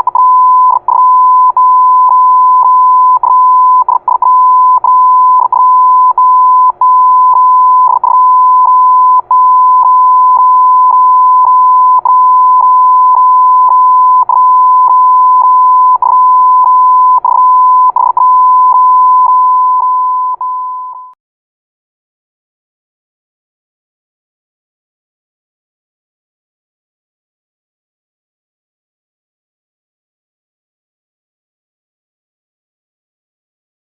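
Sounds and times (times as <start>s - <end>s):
morse code beep tone: 0.0s - 21.2s.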